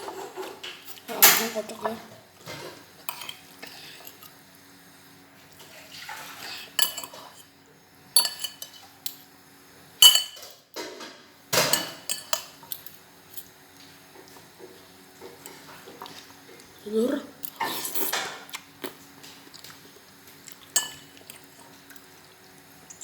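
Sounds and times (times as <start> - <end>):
cutlery clinking against dishes: 8.2 - 8.8, 10.0 - 12.8, 20.7 - 21.4.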